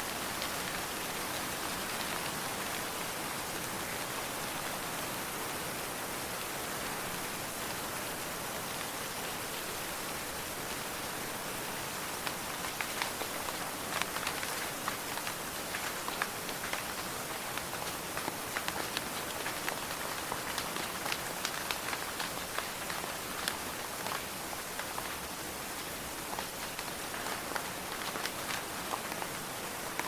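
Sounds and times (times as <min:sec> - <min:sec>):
steady rainfall: 0:00.0 - 0:30.0
raindrops ticking on surface: 0:11.8 - 0:30.0.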